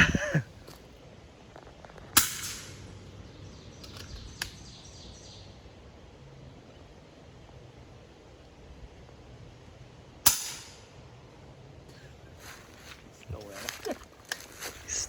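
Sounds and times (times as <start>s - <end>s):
air rifle shot: 2.2s - 2.8s, 10.3s - 10.9s.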